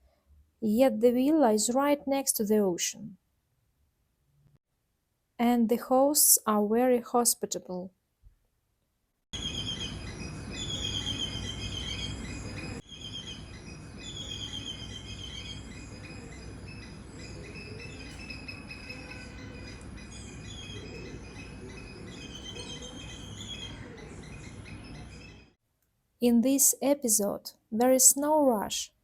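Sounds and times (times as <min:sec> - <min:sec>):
birds chirping: 0:09.4 - 0:25.6.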